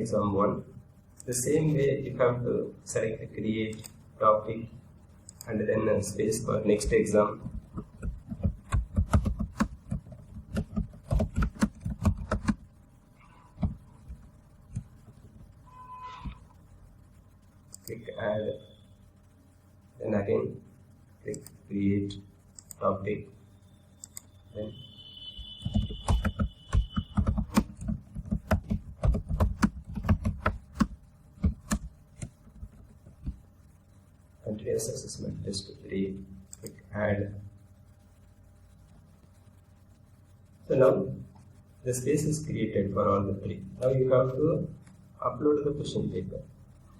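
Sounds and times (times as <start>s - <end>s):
typing on computer keyboard: 7.4s - 12.6s, 25.6s - 33.4s.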